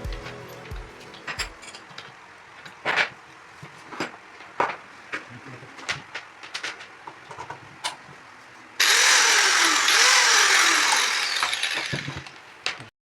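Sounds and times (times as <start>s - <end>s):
electric grinder motor running: 8.8s - 12.4s.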